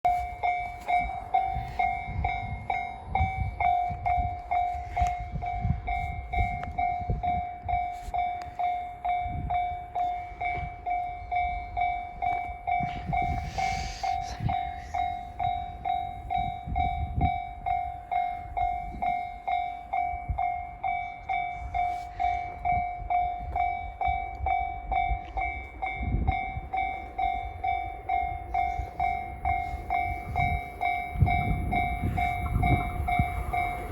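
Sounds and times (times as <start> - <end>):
level crossing warning bell: 0.1 - 33.9
low rumble: 22.6 - 33.9.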